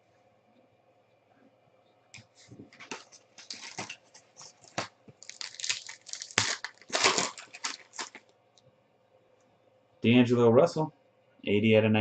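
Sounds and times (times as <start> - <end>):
plastic wrapping crinkling and tearing: 2.7 - 8.3.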